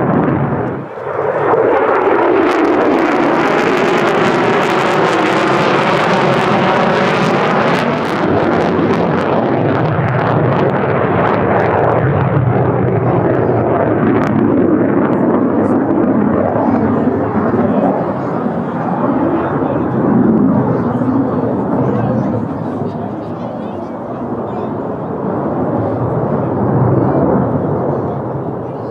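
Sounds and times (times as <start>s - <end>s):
jet engine roar: 0.0s - 28.9s.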